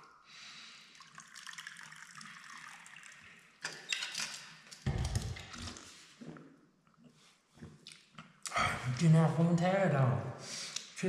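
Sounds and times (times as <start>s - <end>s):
water pouring into cup: 0.9s - 3.6s.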